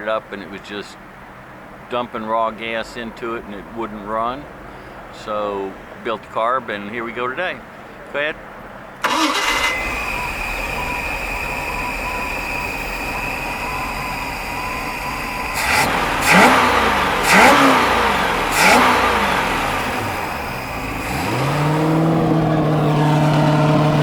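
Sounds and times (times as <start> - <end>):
engine revving: 9.0 - 24.0
boat engine running: 9.8 - 24.0
steady higher hum: 9.8 - 24.0.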